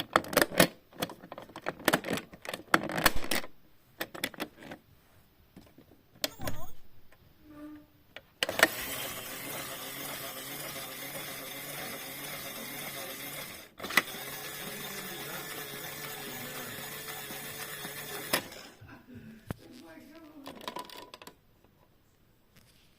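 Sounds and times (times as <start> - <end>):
small electric motor humming: 8.5 - 18.7.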